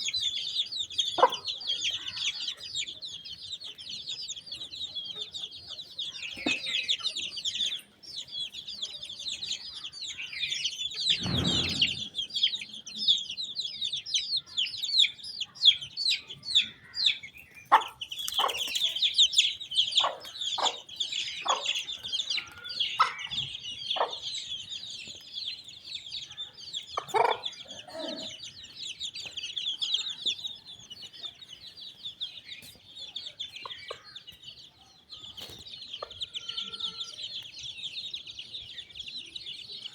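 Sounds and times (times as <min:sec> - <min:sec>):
chicks peeping: 0:00.0 - 0:39.9
hen clucking: 0:01.1 - 0:02.6, 0:16.6 - 0:25.2, 0:26.8 - 0:28.4.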